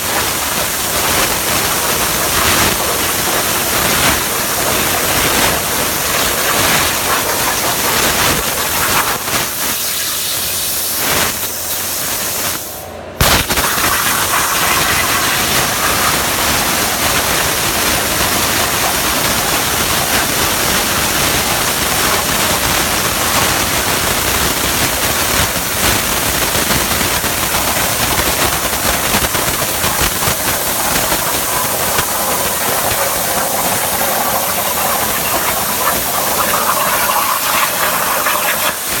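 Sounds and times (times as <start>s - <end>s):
plasma cutter torch hissing: 0.0s - 20.3s, 28.7s - 39.0s.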